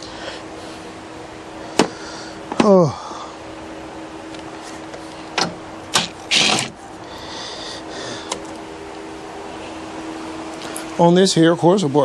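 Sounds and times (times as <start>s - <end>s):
steady hum: 0.0s - 12.0s.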